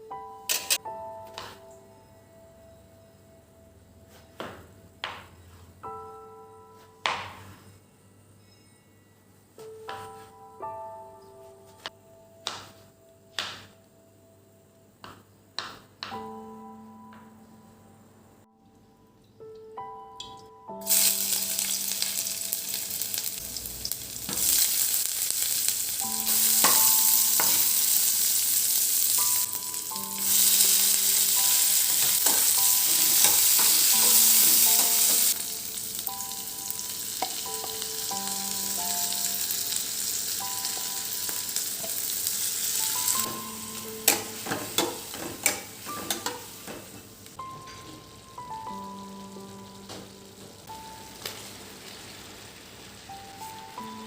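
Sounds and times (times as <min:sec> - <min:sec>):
soft keyboard music: 0:00.0 - 0:54.0
steady hissing noise: 0:20.8 - 0:47.4.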